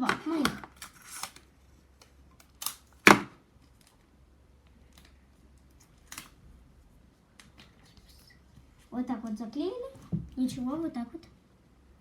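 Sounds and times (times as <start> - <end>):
paper and sticky tape clicks: 0.4 - 3.0, 5.8 - 6.4.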